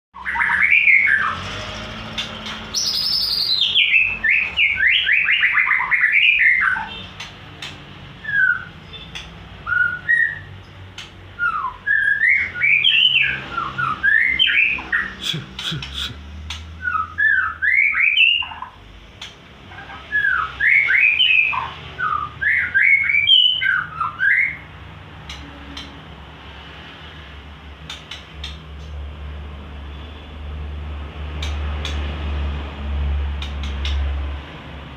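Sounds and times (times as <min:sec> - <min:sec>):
bird singing whistled notes: 0:00.2 - 0:01.4, 0:02.7 - 0:07.0, 0:08.2 - 0:10.5, 0:11.4 - 0:15.2, 0:16.8 - 0:18.8, 0:20.1 - 0:24.7.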